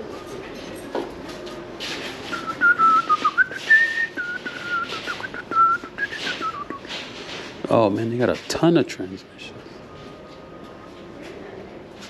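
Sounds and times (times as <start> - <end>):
rustling noise: 1.1 - 8.8
person whistling a tune: 2.3 - 7.0.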